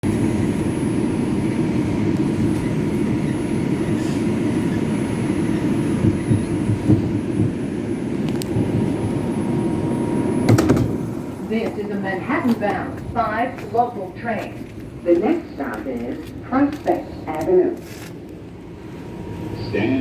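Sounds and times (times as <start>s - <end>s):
subway train wheels rumbling: 0.0s - 20.0s
train knocks: 5.9s - 9.0s, 10.2s - 17.8s.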